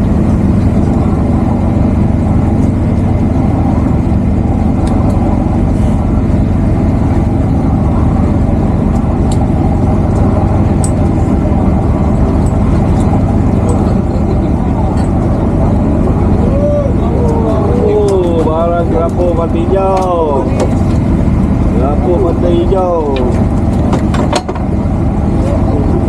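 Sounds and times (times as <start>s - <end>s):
boat engine droning: 0.0s - 26.0s.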